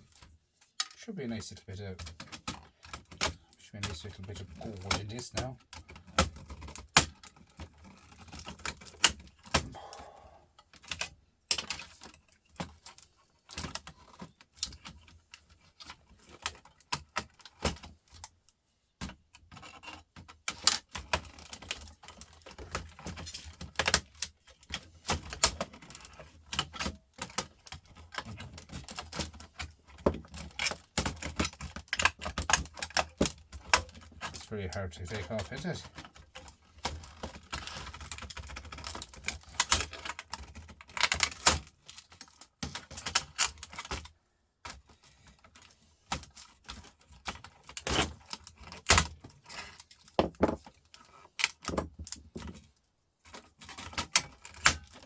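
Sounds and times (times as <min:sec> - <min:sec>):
plastic and metal parts clicking: 0:01.9 - 0:10.0, 0:10.6 - 0:55.0.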